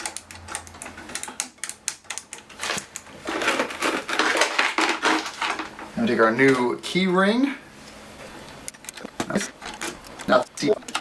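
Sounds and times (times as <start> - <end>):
hard objects clicking and clattering: 0.0 - 6.6.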